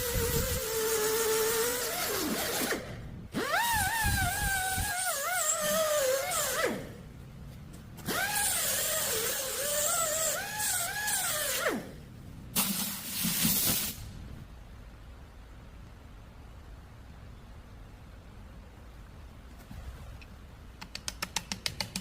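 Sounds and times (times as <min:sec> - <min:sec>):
power tool motor whining on metal: 0:08.0 - 0:11.9.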